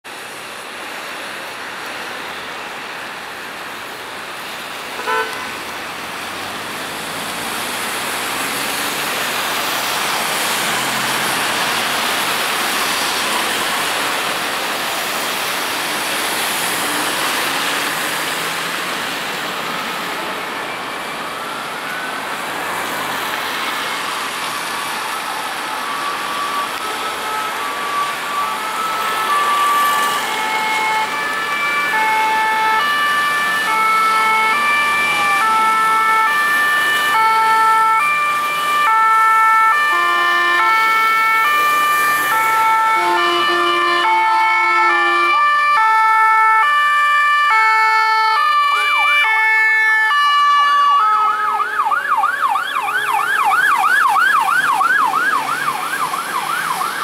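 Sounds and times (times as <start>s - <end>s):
traffic on wet road: 0.0s - 57.0s
fire engine siren: 0.1s - 57.0s
car horn toot: 5.0s - 5.5s, 42.9s - 45.4s.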